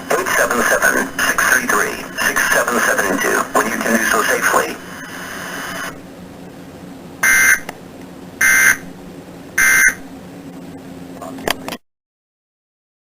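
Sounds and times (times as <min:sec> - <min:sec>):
harsh buzzing data chirps: 0:07.1 - 0:07.7, 0:08.3 - 0:10.9.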